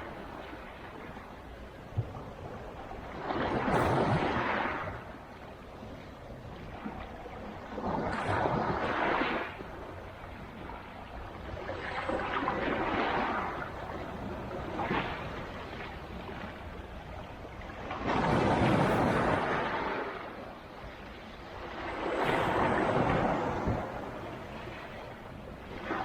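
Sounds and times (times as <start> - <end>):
surf rushing on shore: 0.0 - 1.2, 3.0 - 5.3, 7.6 - 26.0
low wash of sea: 0.0 - 26.0.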